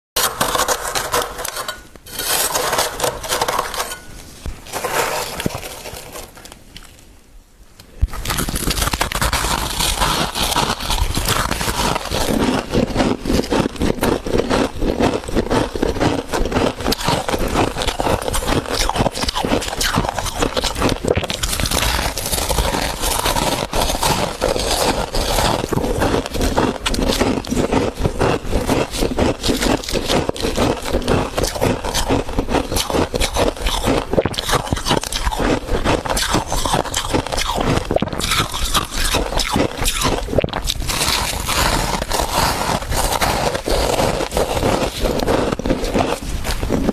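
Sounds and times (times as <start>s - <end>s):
crunching frost in mouth: 0.2s - 7.2s, 7.8s - 46.9s.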